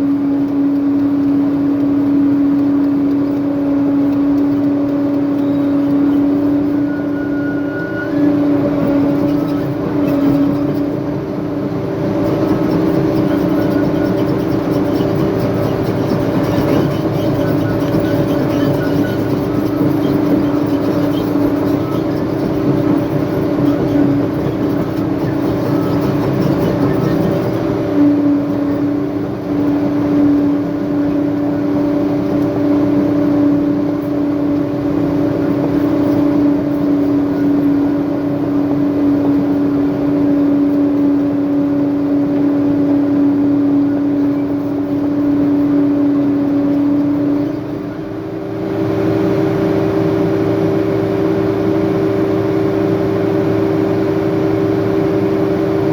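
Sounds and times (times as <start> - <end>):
diesel engine droning: 0.0 - 55.9.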